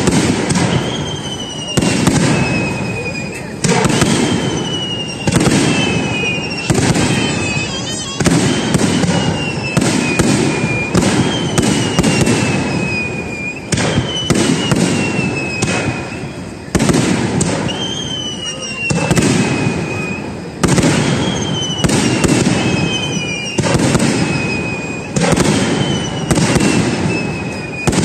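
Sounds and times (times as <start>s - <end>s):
firework shells bursting: 0.0s - 28.0s
high tone sliding downward: 4.5s - 11.5s.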